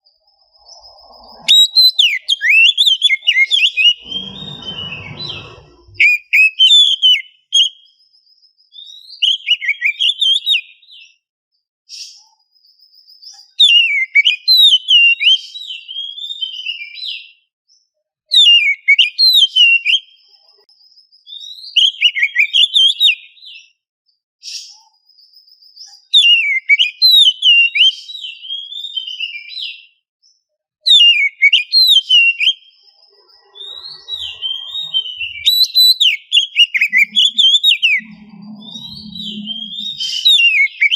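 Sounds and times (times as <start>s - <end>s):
bird whistled song: 0.0s - 11.1s, 20.8s - 23.6s, 25.1s - 29.9s, 30.9s - 40.9s.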